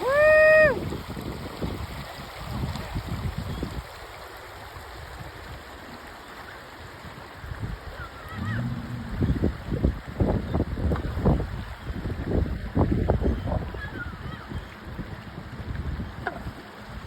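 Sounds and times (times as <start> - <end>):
low thumps of wind on microphone: 0.0 - 6.0, 6.7 - 17.0.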